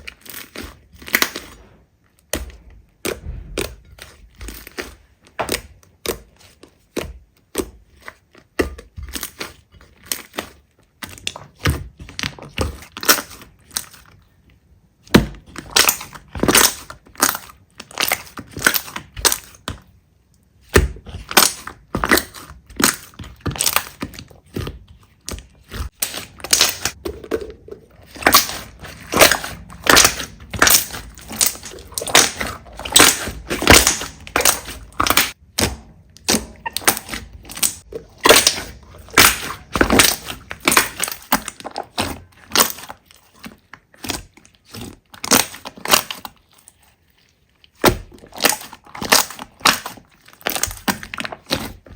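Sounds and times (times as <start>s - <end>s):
slime squished with sticky pops: 15.1s - 19.8s, 20.7s - 46.5s, 47.7s - 51.9s.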